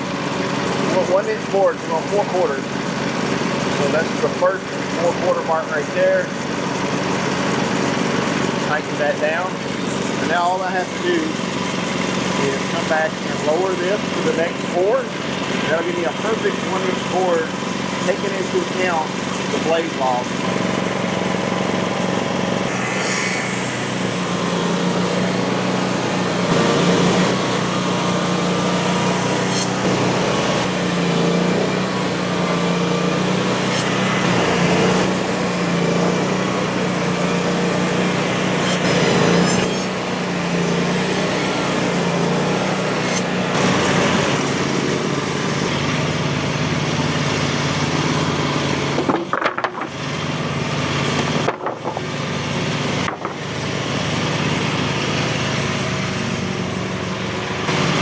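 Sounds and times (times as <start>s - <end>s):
band saw blade cutting wood: 0.0s - 58.0s
small engine humming: 0.0s - 58.0s.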